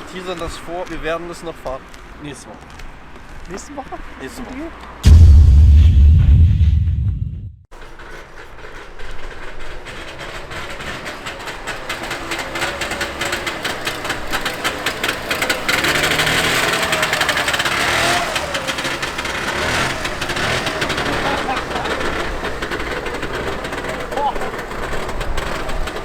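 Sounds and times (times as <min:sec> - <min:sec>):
two-stroke engine revving: 0:08.6 - 0:26.0.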